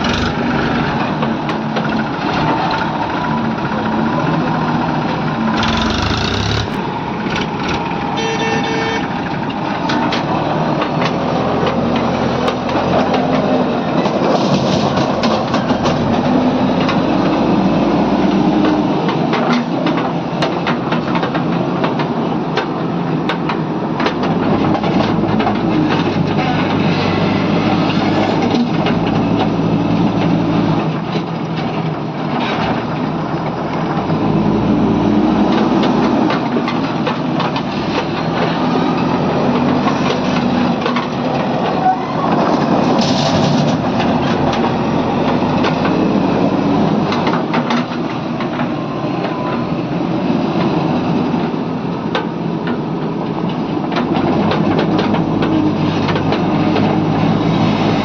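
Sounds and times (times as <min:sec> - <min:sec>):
sharp metal clanks and knocks: 0:00.0 - 0:01.0, 0:05.6 - 0:09.0
diesel engine running under load: 0:00.0 - 0:20.1.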